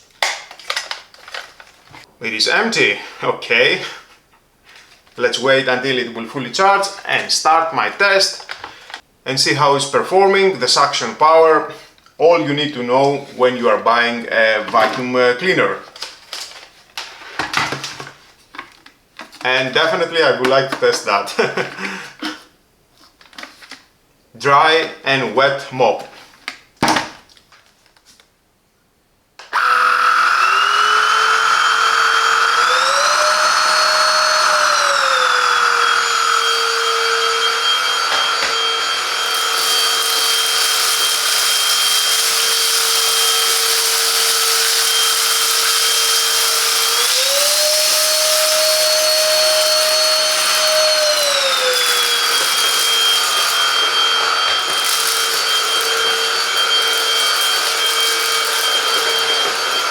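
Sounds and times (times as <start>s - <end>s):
handheld vacuum motor whining: 29.4s - 59.9s.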